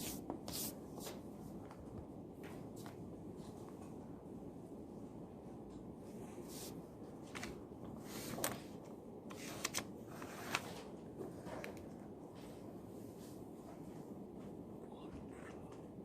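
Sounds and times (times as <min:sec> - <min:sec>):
paper rustling: 0:06.5 - 0:11.9.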